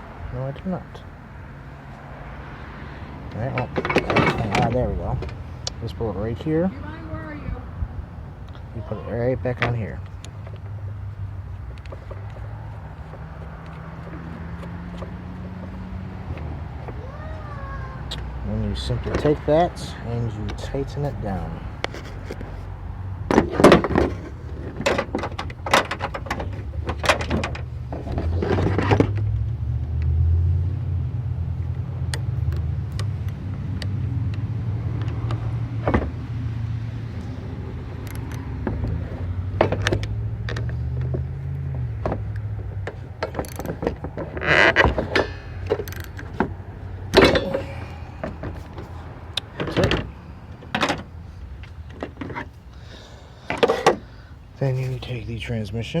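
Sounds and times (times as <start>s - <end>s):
metal tool clicks and clanks: 38.0s - 38.5s, 42.3s - 46.5s, 47.1s - 50.1s.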